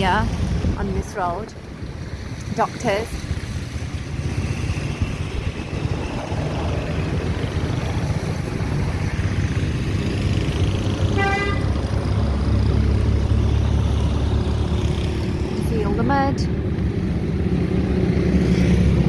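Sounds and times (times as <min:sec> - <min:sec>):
road traffic rumbling: 0:00.0 - 0:19.0
vehicle horn toot: 0:11.1 - 0:11.7.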